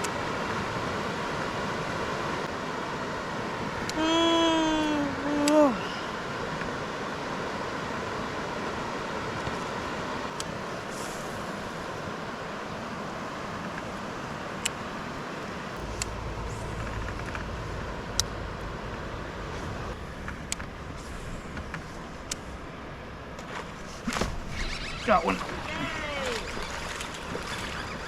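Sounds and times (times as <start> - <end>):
river water rushing: 0.0 - 28.0
low rumble: 15.8 - 23.4.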